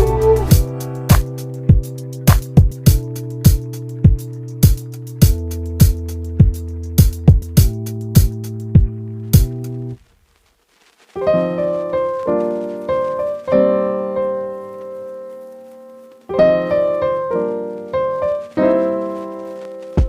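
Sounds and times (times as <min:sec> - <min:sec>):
slow solo piano chords: 0:11.2 - 0:15.6, 0:16.3 - 0:20.0.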